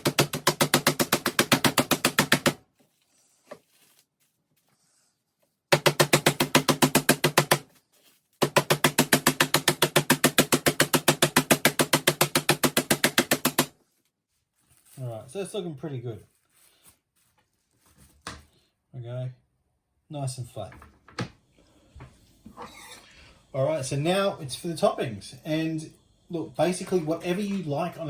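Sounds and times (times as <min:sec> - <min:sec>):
mallet pounding meat: 0:00.0 - 0:02.6, 0:05.7 - 0:07.6, 0:08.4 - 0:13.7.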